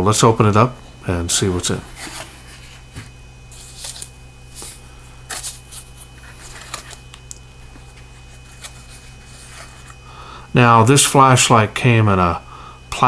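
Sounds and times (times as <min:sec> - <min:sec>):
box contents rustling: 0:01.6 - 0:10.0.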